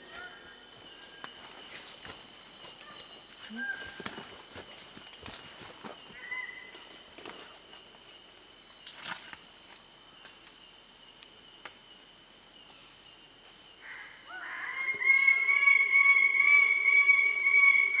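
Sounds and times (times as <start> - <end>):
high-pitched insect drone: 7.8 - 18.0.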